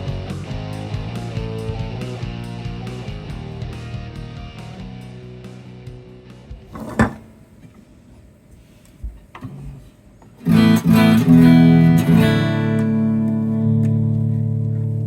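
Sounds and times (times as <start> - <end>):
strummed electric guitar chords: 10.5 - 15.0.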